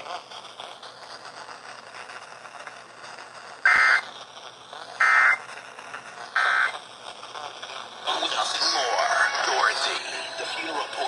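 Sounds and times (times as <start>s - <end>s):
buzzy digital data bursts: 3.4s - 11.0s.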